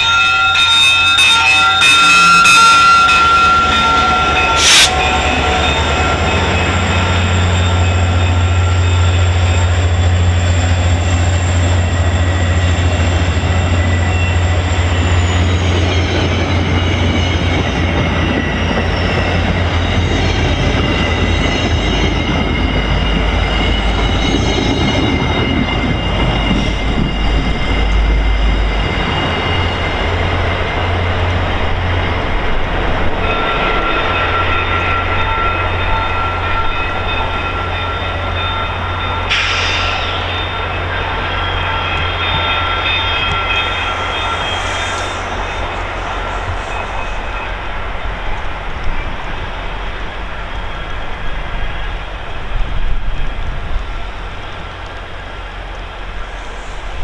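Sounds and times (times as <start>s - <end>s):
train wheels on rails: 0.0s - 57.0s
locomotive engine drone: 2.0s - 57.0s
high whine dropping in pitch: 4.6s - 5.5s.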